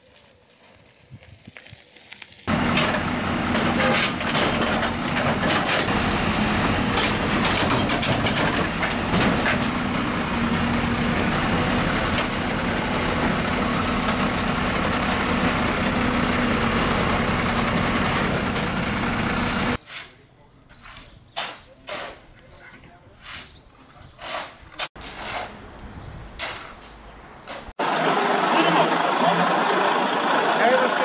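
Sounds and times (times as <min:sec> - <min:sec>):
heavy machinery engine drone: 0:02.5 - 0:19.8, 0:27.8 - 0:31.0
machinery clanks and rattles: 0:02.5 - 0:19.8.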